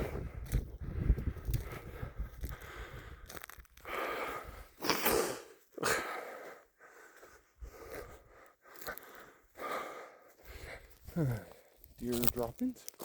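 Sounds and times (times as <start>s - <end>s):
person breathing hard: 0.0s - 11.8s.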